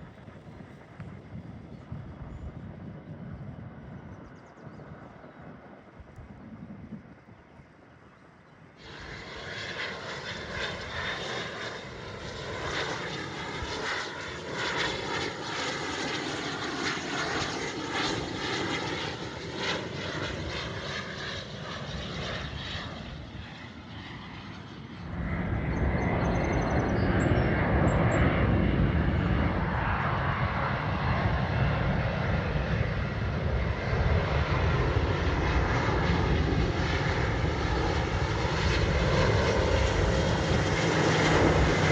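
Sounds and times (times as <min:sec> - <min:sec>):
jet engines whining: 0:08.8 - 0:41.9.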